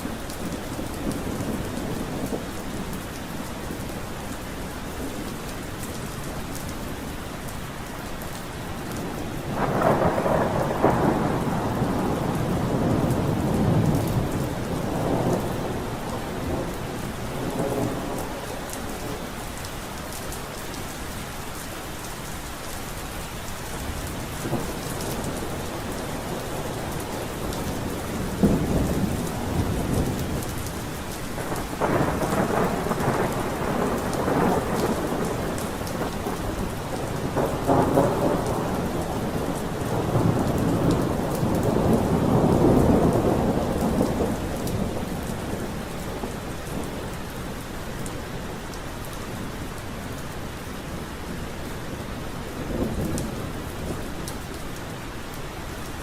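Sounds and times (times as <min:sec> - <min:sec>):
thunder rumbling: 0:00.0 - 0:04.1, 0:08.8 - 0:19.4, 0:24.1 - 0:49.8, 0:52.1 - 0:54.6
steady rain falling: 0:00.0 - 0:56.0.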